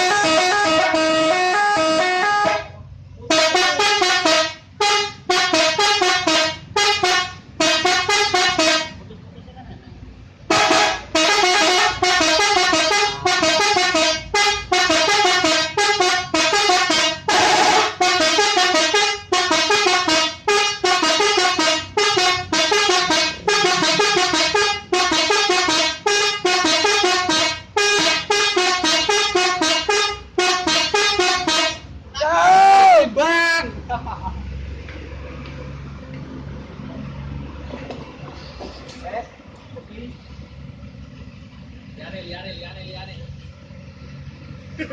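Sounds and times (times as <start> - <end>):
musical air horn tune: 0.0 - 2.7, 3.3 - 8.9, 10.5 - 31.8.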